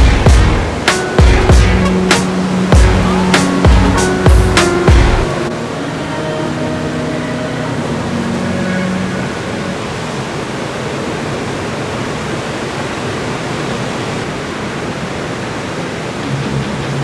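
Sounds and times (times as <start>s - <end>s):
music: 0.0s - 9.7s
ocean surf breaking: 0.0s - 17.0s.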